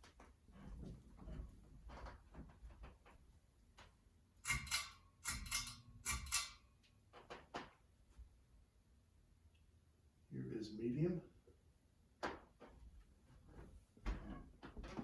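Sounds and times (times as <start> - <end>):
pull-chain switch clicks and rattle: 4.4 - 6.7.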